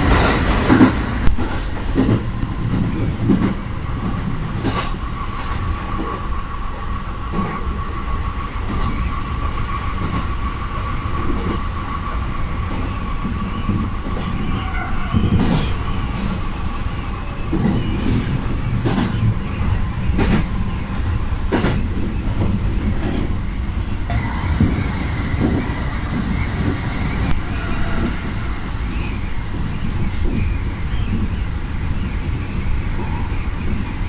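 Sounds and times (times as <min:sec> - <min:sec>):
train interior rumble: 0:00.0 - 0:34.0
wheels knocking over rail joints: 0:24.1 - 0:27.3
faint steady whine: 0:24.1 - 0:27.4.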